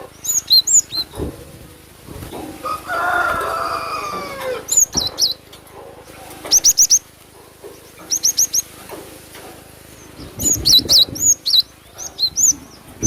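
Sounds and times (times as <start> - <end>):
bird chirping: 0.0 - 1.2, 4.5 - 8.8, 9.9 - 13.0.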